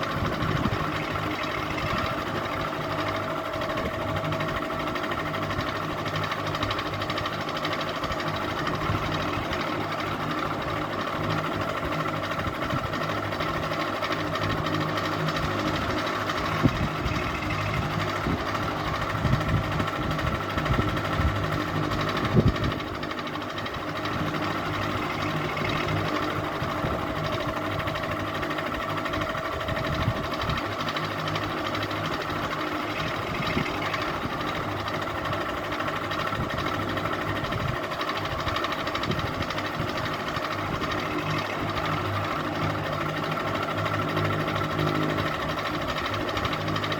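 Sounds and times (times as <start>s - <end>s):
ceiling fan humming and rattling: 0.0s - 46.9s.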